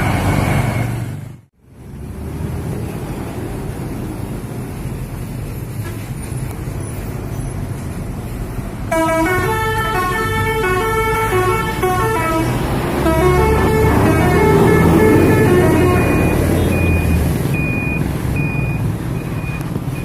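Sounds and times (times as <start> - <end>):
bus engine rumble: 0.0 - 20.0
traffic rumble: 0.0 - 20.0
musical air horns playing a tune: 8.9 - 16.6.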